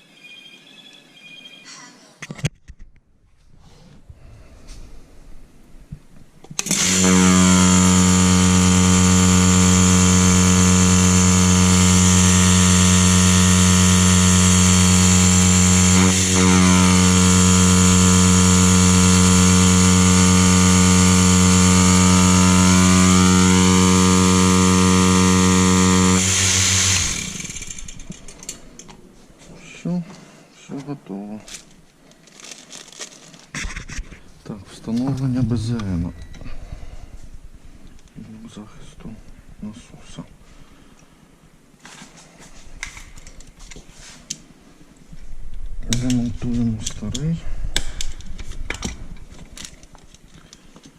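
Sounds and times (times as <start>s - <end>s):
vacuum pump humming: 6.5s - 28.8s.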